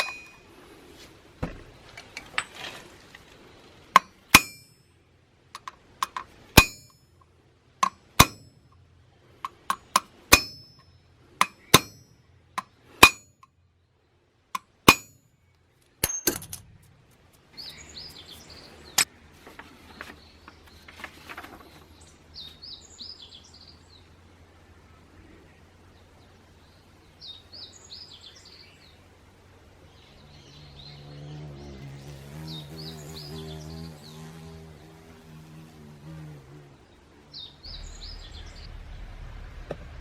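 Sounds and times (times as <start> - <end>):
hammer striking metal: 0.0 - 0.5, 4.0 - 4.8, 6.0 - 7.0, 7.8 - 8.6, 9.5 - 10.8, 11.4 - 12.1, 13.0 - 13.4, 14.6 - 15.2
birds chirping faintly: 0.0 - 40.0.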